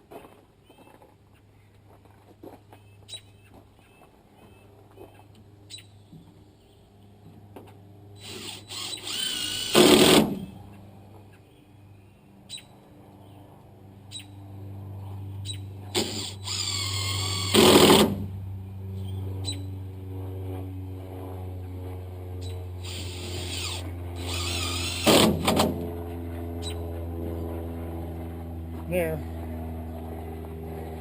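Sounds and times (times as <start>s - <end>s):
steady low hum: 0.0s - 31.0s
cordless drill whining: 8.2s - 10.2s, 15.9s - 18.0s, 22.8s - 25.6s.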